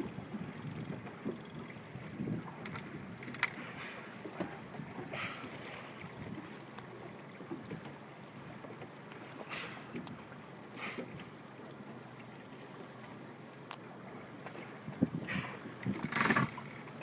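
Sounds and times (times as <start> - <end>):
water wash: 0.0 - 13.2
wind: 0.0 - 17.0
dolphins blowing air: 3.6 - 6.0, 9.4 - 10.0, 10.6 - 11.3, 15.2 - 16.7.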